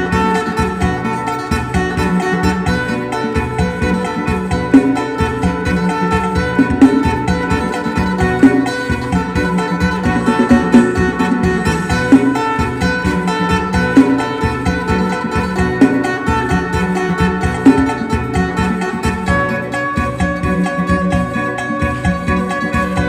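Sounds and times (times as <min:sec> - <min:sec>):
plucked lute melody: 0:00.0 - 0:23.0
steady backing beat: 0:00.0 - 0:23.0.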